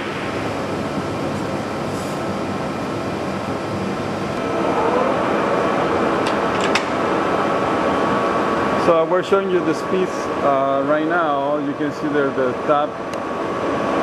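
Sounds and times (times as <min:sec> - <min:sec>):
metal lathe whining: 0:04.2 - 0:10.4.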